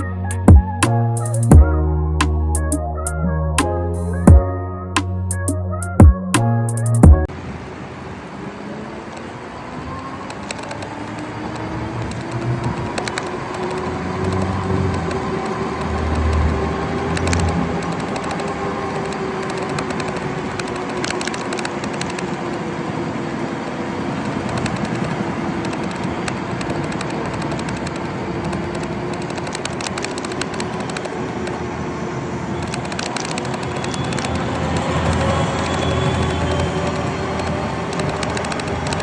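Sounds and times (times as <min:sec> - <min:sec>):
car engine drone: 0:07.2 - 0:39.0
dense rapid clicking: 0:10.2 - 0:22.7, 0:24.2 - 0:31.6, 0:32.6 - 0:39.0.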